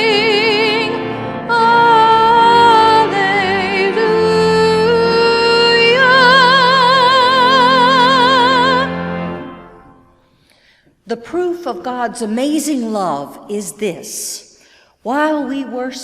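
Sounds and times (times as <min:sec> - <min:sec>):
person singing a hymn with vibrato: 0:00.0 - 0:10.1
sustained instrumental accompaniment: 0:00.0 - 0:10.4.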